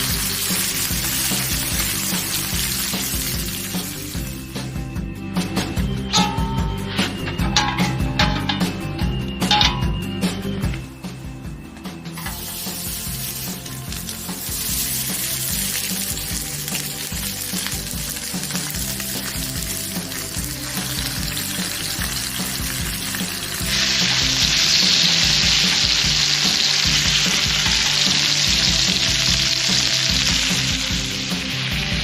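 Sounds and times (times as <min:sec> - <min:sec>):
meat sizzling on a griddle: 0:00.0 - 0:04.5, 0:12.2 - 0:32.0.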